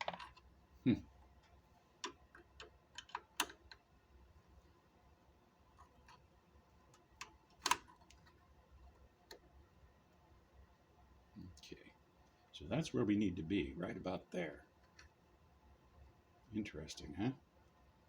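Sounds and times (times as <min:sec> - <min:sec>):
light clicks and taps of parts: 0:01.4 - 0:03.9.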